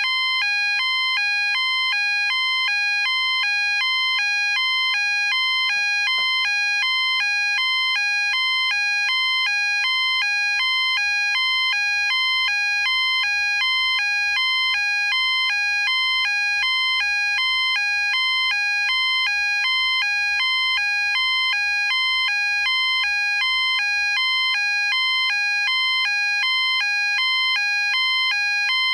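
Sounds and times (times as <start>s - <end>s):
two-tone fire alarm: 0.0s - 28.9s.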